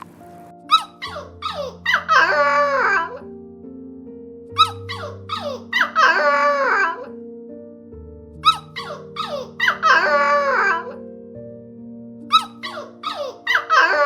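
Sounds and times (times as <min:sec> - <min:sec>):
background music: 0:00.0 - 0:14.0
animal squeaks and wavering cry: 0:00.7 - 0:03.2, 0:04.6 - 0:07.1, 0:08.4 - 0:11.0, 0:12.3 - 0:14.0.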